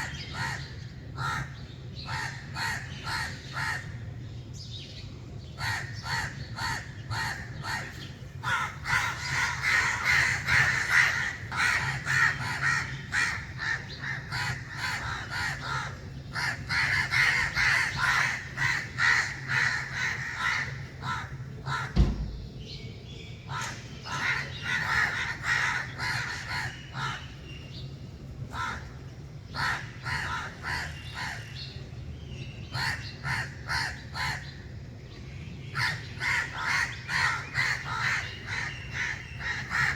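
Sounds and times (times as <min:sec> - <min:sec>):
crows cawing: 0:00.0 - 0:04.0, 0:05.6 - 0:22.1, 0:23.5 - 0:27.4, 0:28.5 - 0:31.5, 0:32.7 - 0:34.6, 0:35.8 - 0:39.9
low thump: 0:22.0 - 0:22.7.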